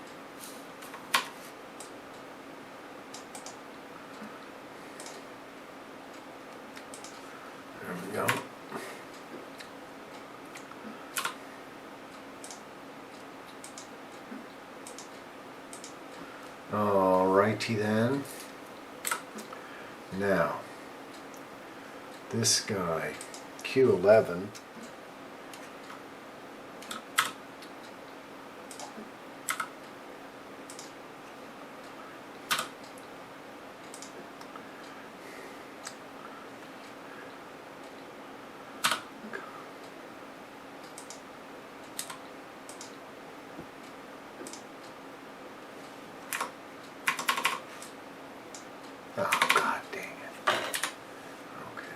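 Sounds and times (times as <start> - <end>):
faint steady hum: 0.0 - 51.9
computer keys clicking: 3.1 - 3.6, 5.0 - 5.2, 6.7 - 7.2, 10.5 - 11.4, 12.4 - 12.6, 13.5 - 13.9, 14.8 - 16.0, 19.0 - 19.5, 23.2 - 23.7, 26.8 - 27.8, 28.7 - 29.8, 30.7 - 31.0, 32.5 - 33.1, 33.8 - 34.5, 38.8 - 39.1, 40.8 - 41.3, 41.9 - 43.0, 44.4 - 44.7, 46.2 - 49.8, 50.6 - 51.0.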